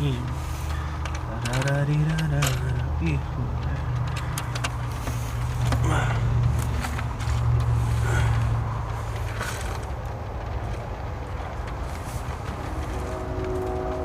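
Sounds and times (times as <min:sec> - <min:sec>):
low engine drone: 0:00.0 - 0:14.0
hand tools clicking and tapping: 0:00.2 - 0:07.8.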